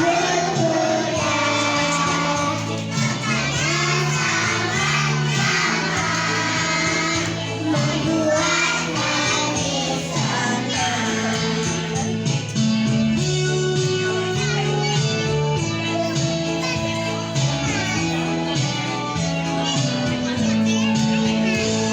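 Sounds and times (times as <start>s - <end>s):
children singing: 0.0s - 12.0s
backing music with low notes: 0.0s - 21.9s.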